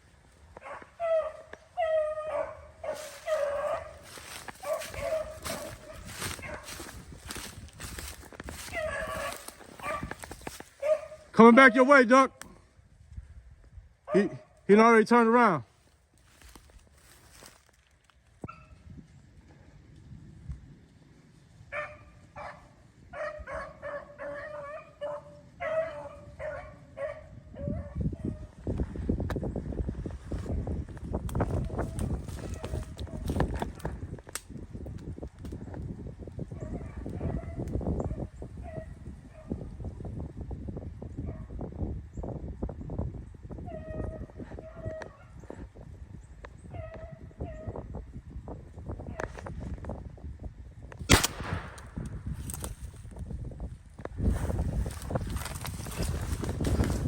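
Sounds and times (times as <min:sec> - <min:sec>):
hounds baying: 0:00.6 - 0:11.8, 0:21.8 - 0:28.4
dog baying: 0:00.7 - 0:06.6, 0:08.6 - 0:10.1
footsteps crunching through brush: 0:02.8 - 0:11.2, 0:15.8 - 0:18.4, 0:29.4 - 0:34.4, 0:51.1 - 0:57.0
rustling crackling noise: 0:02.8 - 0:11.4, 0:15.7 - 0:18.5, 0:28.6 - 0:37.9, 0:51.0 - 0:57.0.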